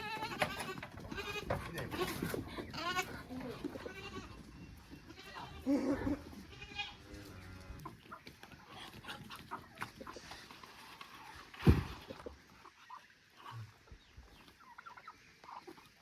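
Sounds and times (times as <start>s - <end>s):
goats bleating: 0.0s - 7.9s
loud thump: 11.6s - 12.0s.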